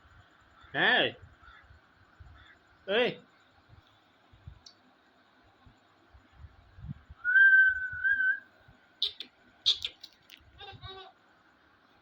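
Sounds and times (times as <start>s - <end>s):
whistled note: 7.2s - 8.4s.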